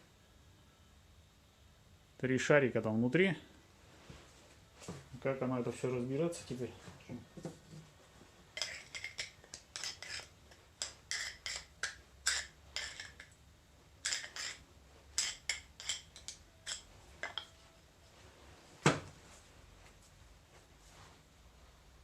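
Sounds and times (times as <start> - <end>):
steel parts clinking: 15.2 - 17.6.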